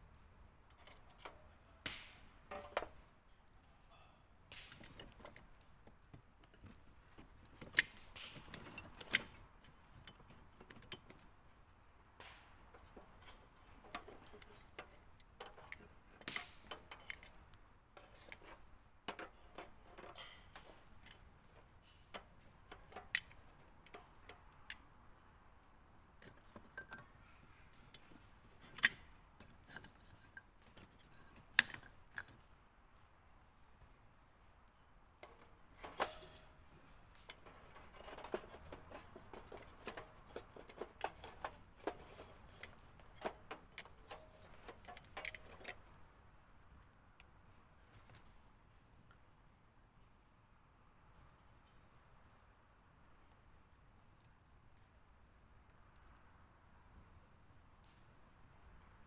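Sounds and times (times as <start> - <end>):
cooking gear clicking and tapping: 12.2 - 24.8, 35.2 - 46.0.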